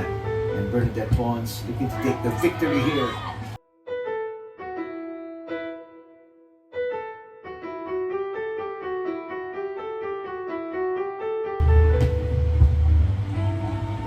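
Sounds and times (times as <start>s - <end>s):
piano music: 0.0s - 14.0s
loud low rumble and hiss: 11.6s - 14.0s.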